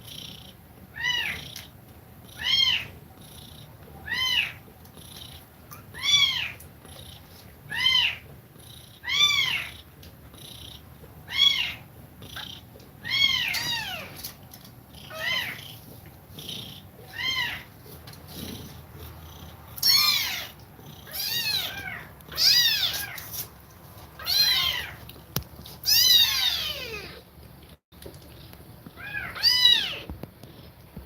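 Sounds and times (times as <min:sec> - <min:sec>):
low steady purr: 0:00.0 - 0:23.0
kittens meowing: 0:00.9 - 0:01.7, 0:02.3 - 0:03.0, 0:04.0 - 0:04.6, 0:05.2 - 0:06.6, 0:07.7 - 0:08.3, 0:09.0 - 0:09.8, 0:11.3 - 0:14.2, 0:15.0 - 0:15.8, 0:16.5 - 0:17.7, 0:19.3 - 0:23.3, 0:24.2 - 0:25.0, 0:25.8 - 0:27.2, 0:29.0 - 0:30.1.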